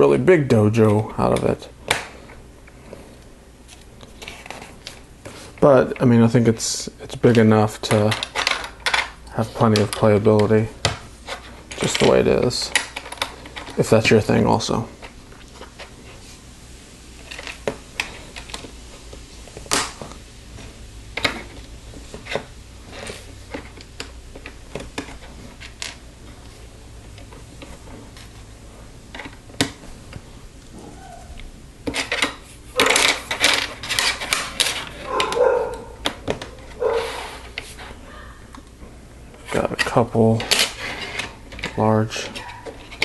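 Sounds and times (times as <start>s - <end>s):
plastic bricks clicking together: 7.9s - 9.1s.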